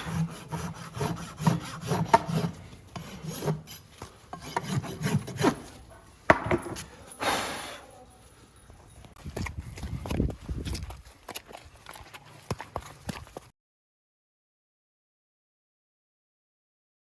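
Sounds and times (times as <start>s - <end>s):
rasp filing hoof: 0.0s - 5.9s.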